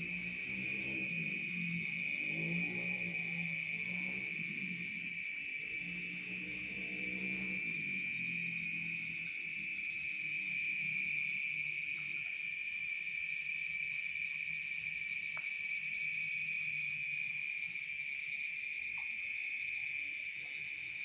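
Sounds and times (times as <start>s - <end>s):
night insects trilling: 0.0s - 21.0s.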